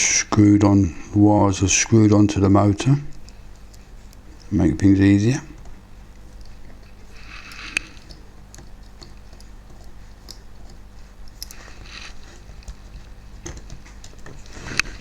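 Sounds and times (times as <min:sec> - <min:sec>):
small clicks and taps: 0:05.5 - 0:15.0.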